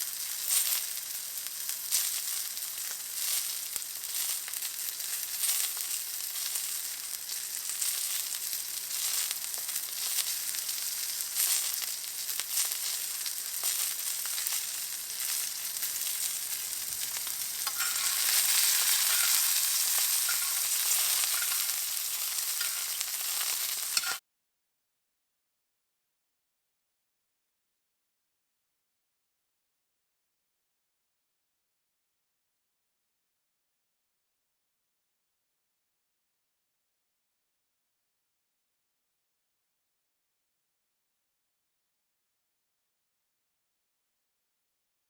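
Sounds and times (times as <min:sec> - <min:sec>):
steak sizzling in a pan: 0:00.0 - 0:24.2.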